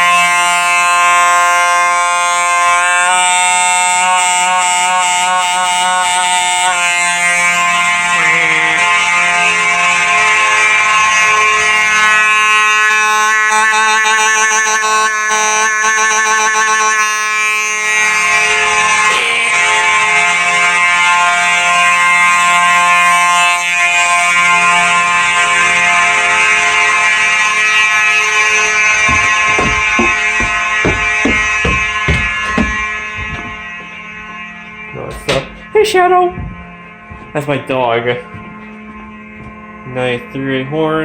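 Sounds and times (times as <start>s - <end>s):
fire alarm horn blaring: 0.0s - 41.0s.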